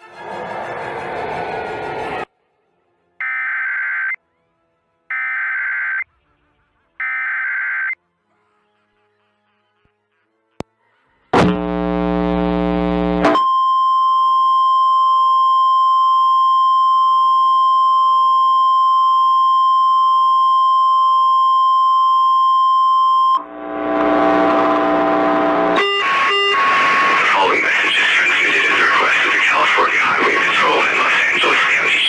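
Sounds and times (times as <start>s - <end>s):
harsh electronic buzz: 11.2s - 13.4s, 23.4s - 31.8s.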